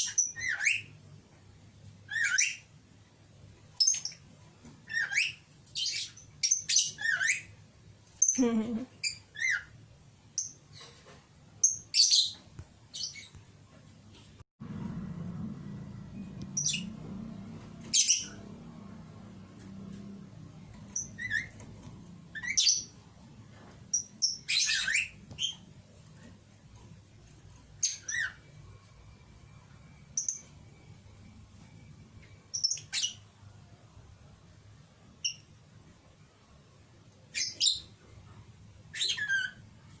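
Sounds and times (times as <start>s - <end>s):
birds chirping and squawking: 0.0s - 1.0s, 2.1s - 2.7s, 4.8s - 7.5s, 9.0s - 9.8s, 16.5s - 18.7s, 20.8s - 23.0s, 23.9s - 25.7s, 27.8s - 28.6s, 32.5s - 33.3s, 38.9s - 39.7s.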